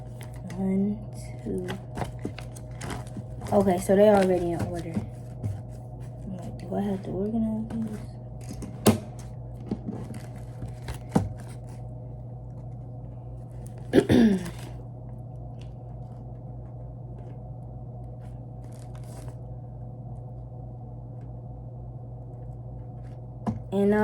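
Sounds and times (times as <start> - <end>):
steady low hum: 0.0 - 24.0
package handling clicks and taps: 1.7 - 5.7.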